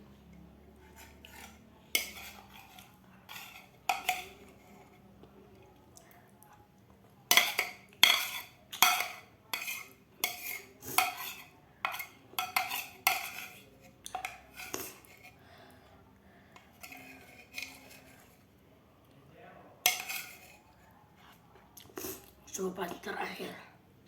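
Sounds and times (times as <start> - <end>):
spoon scraping on a plate: 0.7 - 5.1, 7.3 - 15.4, 16.6 - 18.4, 19.8 - 21.4.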